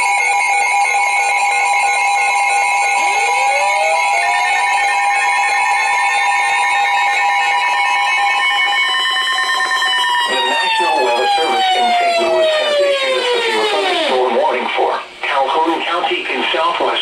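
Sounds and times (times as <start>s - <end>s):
loud two-tone alarm: 0.0s - 14.9s
pulsing tones: 7.6s - 14.9s.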